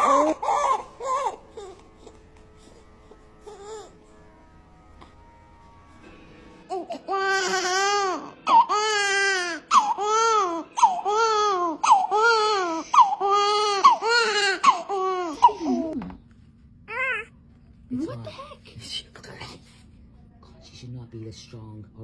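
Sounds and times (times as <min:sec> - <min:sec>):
newborn baby crying: 0:00.0 - 0:02.2, 0:03.4 - 0:04.0, 0:06.7 - 0:16.0, 0:16.9 - 0:17.4.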